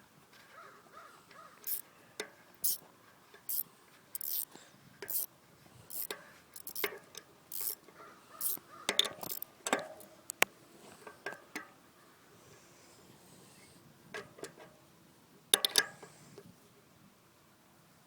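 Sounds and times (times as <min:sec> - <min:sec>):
wrench clicking and scraping: 0:01.6 - 0:02.8, 0:03.4 - 0:05.3, 0:05.9 - 0:07.8, 0:08.4 - 0:10.4, 0:15.6 - 0:16.0.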